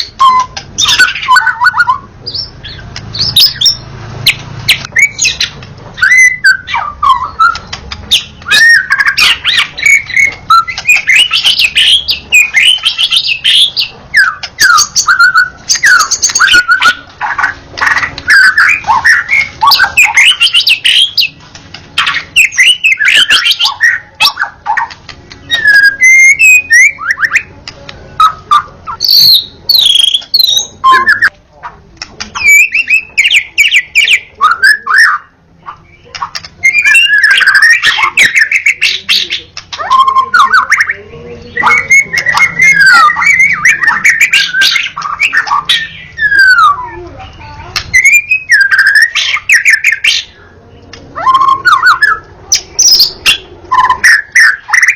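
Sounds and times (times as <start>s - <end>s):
bird singing whistles and chirps: 0.0s - 21.4s, 22.0s - 27.6s, 28.2s - 31.4s, 32.3s - 47.0s, 47.9s - 50.4s, 51.2s - 54.9s.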